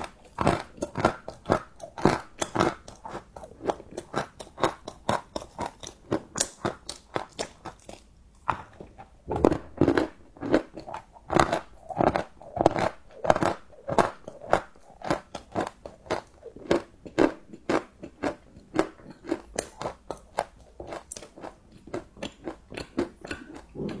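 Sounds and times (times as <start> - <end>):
chewing crunchy chocolate: 0.0 - 24.0.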